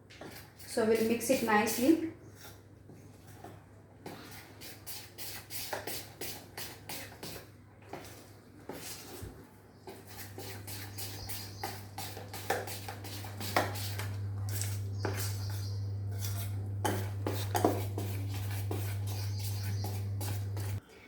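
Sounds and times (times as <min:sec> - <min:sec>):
spoon beating batter in bowl: 0:09.8 - 0:20.8.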